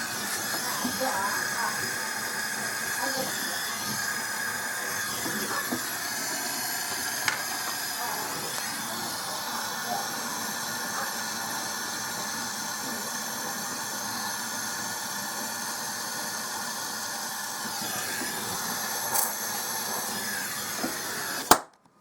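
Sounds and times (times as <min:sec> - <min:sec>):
torch flame hissing: 0:00.0 - 0:21.7
torch shutoff click: 0:05.0 - 0:09.0, 0:17.6 - 0:21.8.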